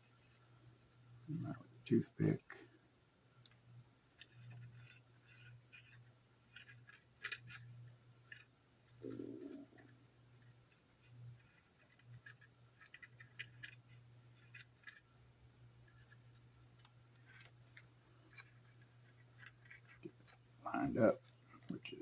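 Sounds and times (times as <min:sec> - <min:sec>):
steady low hum: 0:00.0 - 0:22.0
plastic model parts clicking: 0:04.2 - 0:09.6, 0:10.4 - 0:15.1, 0:15.8 - 0:20.6.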